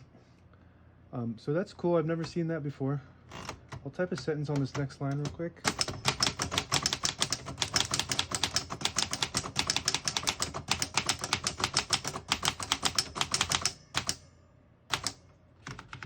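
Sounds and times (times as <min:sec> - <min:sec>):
typewriter typing: 0:03.3 - 0:14.2, 0:14.9 - 0:16.0.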